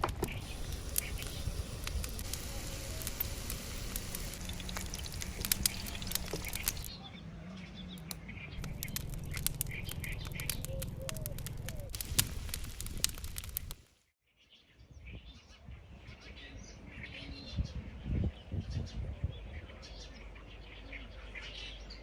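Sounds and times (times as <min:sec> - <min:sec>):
small clicks: 0:00.0 - 0:06.9, 0:08.0 - 0:13.8
birds chirping: 0:00.0 - 0:07.0, 0:08.0 - 0:13.7
low rumble: 0:00.4 - 0:06.9.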